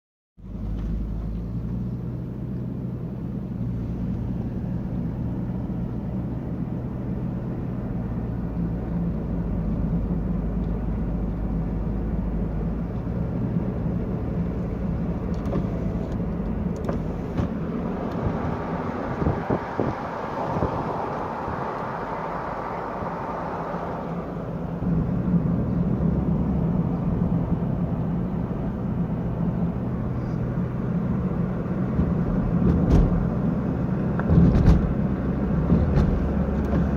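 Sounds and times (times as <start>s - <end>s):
road noise: 0.4s - 36.9s
vehicle engine humming: 0.4s - 36.9s.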